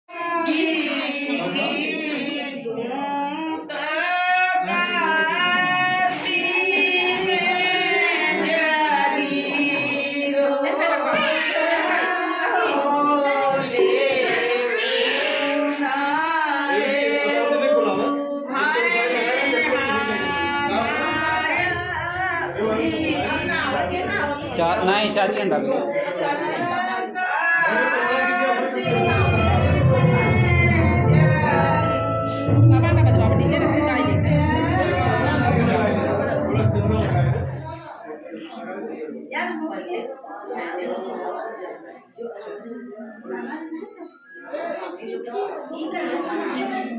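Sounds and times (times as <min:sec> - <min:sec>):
women singing: 0:00.1 - 0:24.9, 0:26.1 - 0:37.9.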